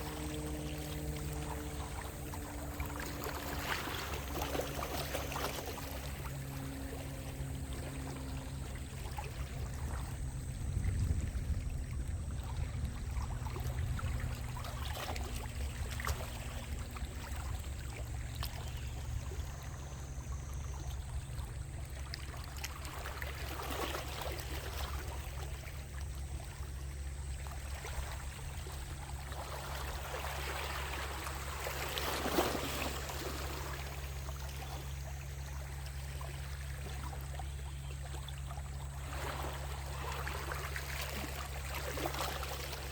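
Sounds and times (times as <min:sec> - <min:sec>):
steady low rumble: 0:00.0 - 0:23.4.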